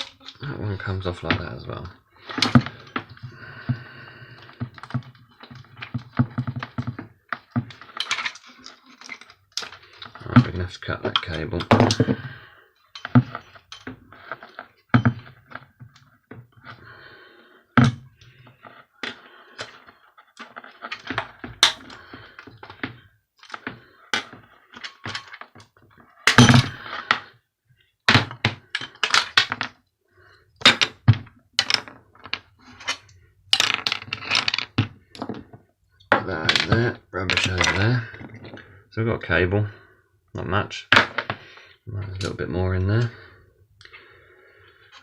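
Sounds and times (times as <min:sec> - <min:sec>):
metal parts and tools clunking: 0:00.0 - 0:16.0, 0:17.8 - 0:27.3, 0:30.6 - 0:38.6.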